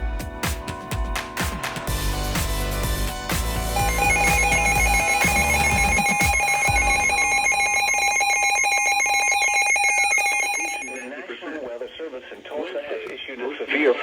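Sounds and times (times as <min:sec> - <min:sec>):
steady electronic tone: 0:01.9 - 0:11.1
shrill electronic alarm beep: 0:03.6 - 0:11.1.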